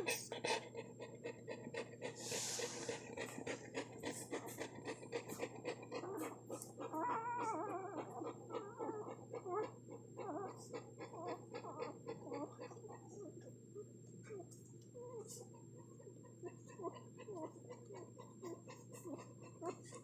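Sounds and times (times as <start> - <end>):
puppies squeaking and whimpering: 2.1 - 13.4, 16.5 - 20.0.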